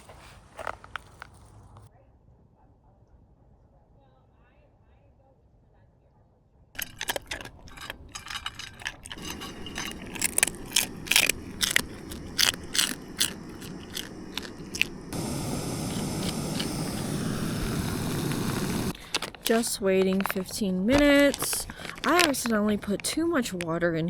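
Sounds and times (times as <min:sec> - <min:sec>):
water pouring into pouch: 0:06.8 - 0:23.7
foil pouch crinkling: 0:06.8 - 0:24.0.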